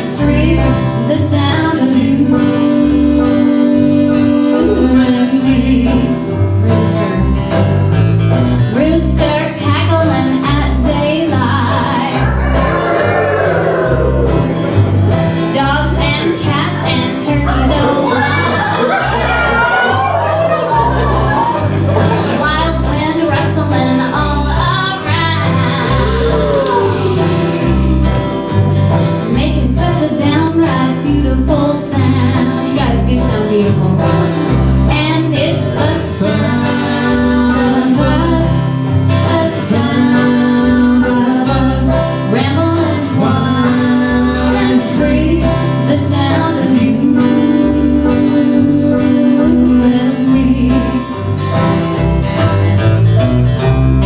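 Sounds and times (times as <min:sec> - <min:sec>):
woman singing: 0:00.0 - 0:07.7, 0:08.6 - 0:12.3, 0:15.5 - 0:18.9, 0:22.3 - 0:28.2, 0:29.3 - 0:51.3
bass notes: 0:00.0 - 0:54.0
plucked guitar and banjo: 0:00.0 - 0:54.0.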